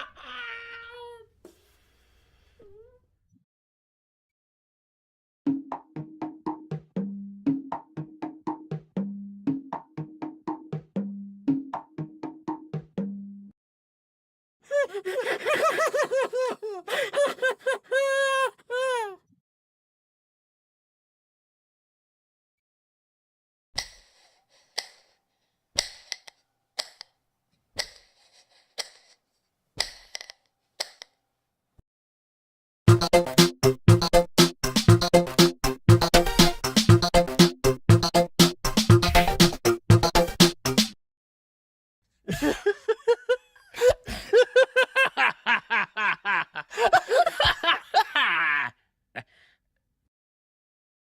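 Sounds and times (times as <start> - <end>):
person laughing: 14.7 - 19.2, 42.3 - 49.3.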